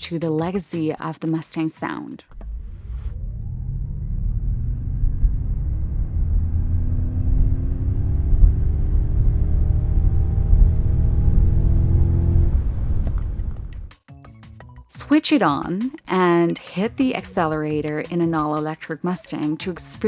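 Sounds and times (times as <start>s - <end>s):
synthesized engine rumble rising: 2.3s - 13.9s.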